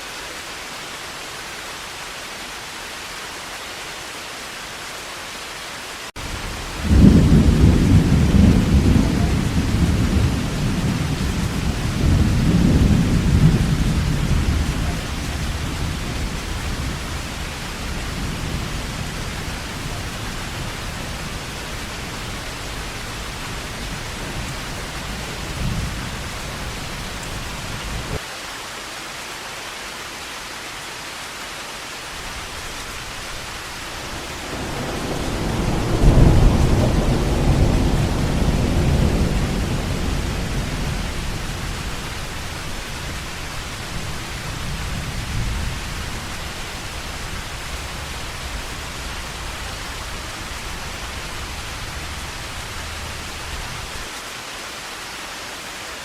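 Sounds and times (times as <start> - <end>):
heavy rain falling: 0.0 - 56.0
rolling thunder: 6.2 - 28.2, 32.2 - 54.1.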